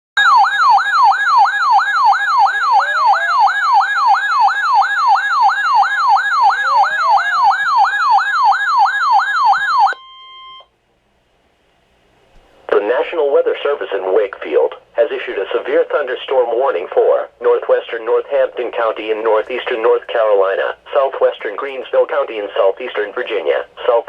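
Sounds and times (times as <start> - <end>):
electronic siren alert tone: 0.2 - 10.7
short steady beep: 9.9 - 10.7.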